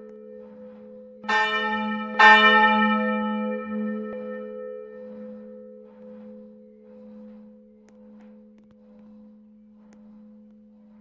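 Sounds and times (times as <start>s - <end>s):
church bell ringing on: 1.3s - 5.8s.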